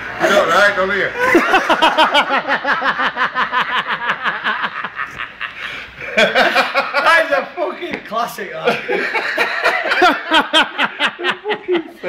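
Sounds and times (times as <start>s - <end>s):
man laughing hard: 1.2s - 7.1s, 8.6s - 12.0s
man speaking: 7.0s - 8.9s.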